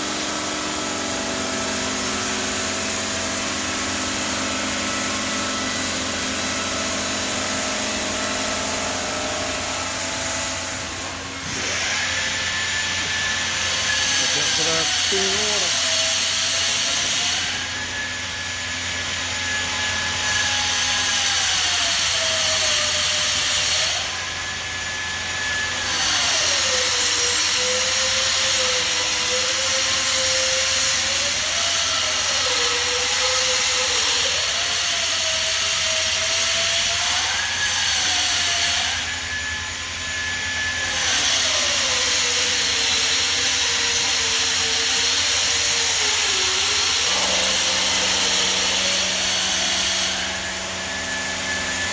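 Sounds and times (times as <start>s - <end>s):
stone saw hissing: 0.0s - 18.6s, 25.5s - 51.9s
saw whine changing pitch: 5.4s - 18.4s, 45.2s - 51.9s.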